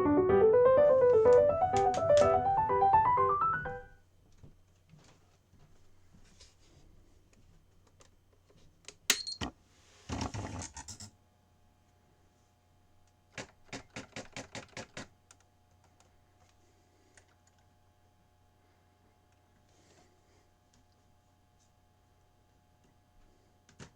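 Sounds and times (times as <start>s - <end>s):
typewriter typing: 13.4s - 15.1s.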